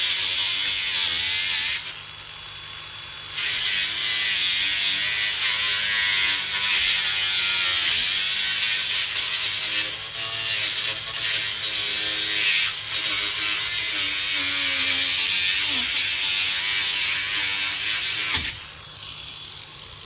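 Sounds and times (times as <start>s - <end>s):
small electric motor tool buzzing: 0.0s - 20.0s.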